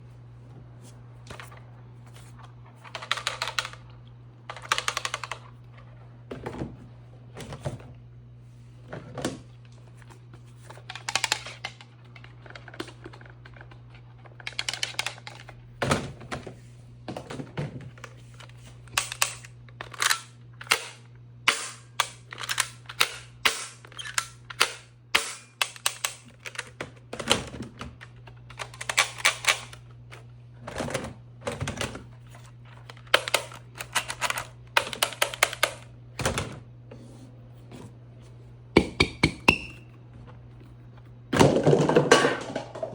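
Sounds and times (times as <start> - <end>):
steady low hum: 0.0 - 42.9
toy blaster plastic clicks and rattles: 2.9 - 3.8, 4.5 - 5.4, 10.9 - 11.8, 14.5 - 15.5, 18.9 - 26.8, 28.5 - 29.8, 32.9 - 35.9.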